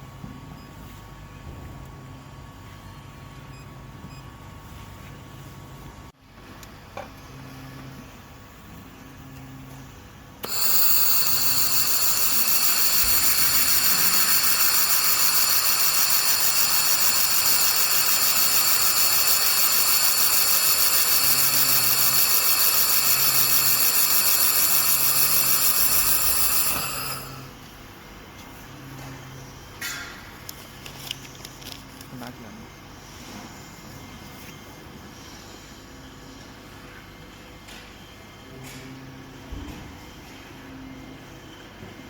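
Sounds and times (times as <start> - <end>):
laser welder pulsing hiss: 10.4 - 27.5.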